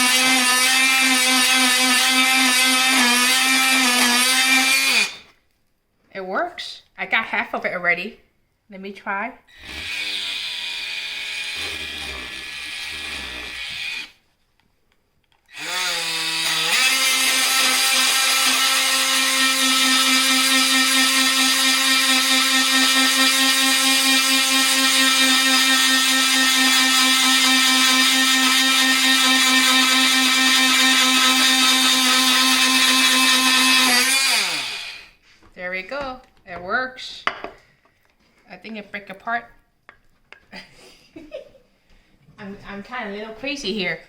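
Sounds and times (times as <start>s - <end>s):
multi-tool buzzing cutting bone: 0.0s - 5.3s, 9.5s - 14.2s, 15.5s - 35.1s.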